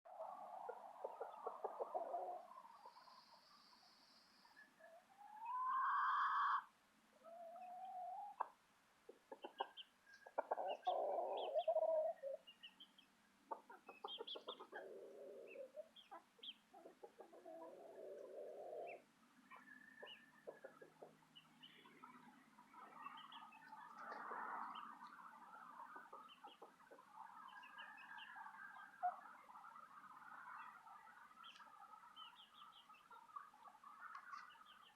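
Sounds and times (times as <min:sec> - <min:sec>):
chickens clucking: 0:00.2 - 0:34.9
chicken squawk: 0:05.2 - 0:08.5, 0:10.4 - 0:12.4.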